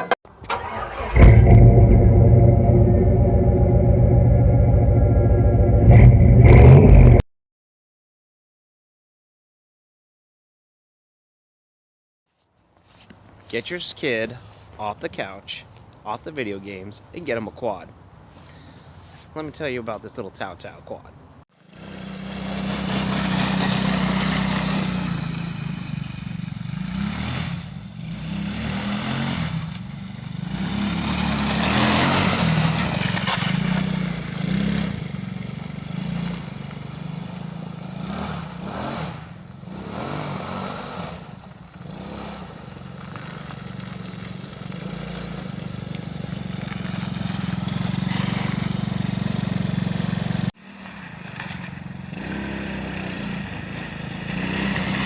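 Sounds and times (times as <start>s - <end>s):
quad engine revving: 0.4s - 7.2s, 21.7s - 55.0s.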